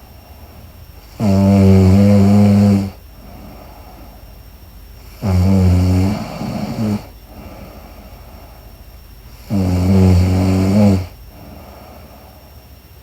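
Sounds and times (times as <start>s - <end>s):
woman snoring: 1.0s - 4.1s, 5.0s - 8.7s, 9.3s - 12.4s.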